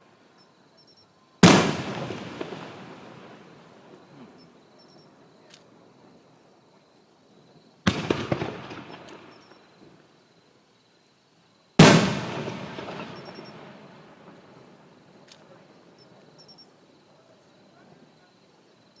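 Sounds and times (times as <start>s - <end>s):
firework shells bursting: 7.9s - 9.6s, 11.8s - 15.9s.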